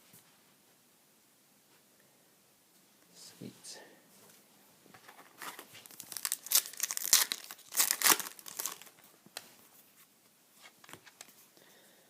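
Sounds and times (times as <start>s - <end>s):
wrapper tearing and crinkling: 5.4s - 9.0s.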